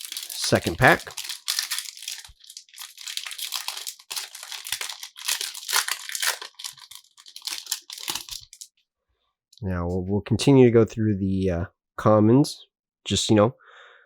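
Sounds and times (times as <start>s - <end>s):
foil wrapper tearing and crinkling: 0.0s - 8.7s.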